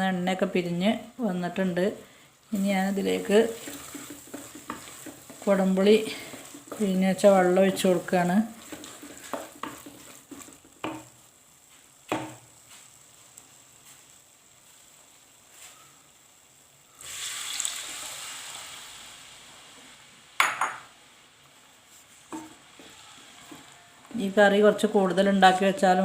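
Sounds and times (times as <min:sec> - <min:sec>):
liquid sizzling in hot pan: 0:01.0 - 0:26.0
utensil knocking on pan: 0:03.2 - 0:11.2, 0:12.1 - 0:12.4.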